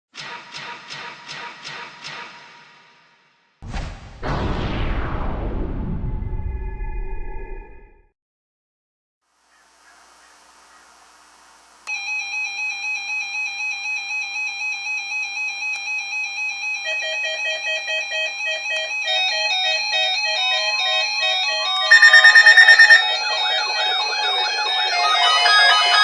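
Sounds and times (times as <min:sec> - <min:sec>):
electronic synth music: 0:20.2 - 0:26.0.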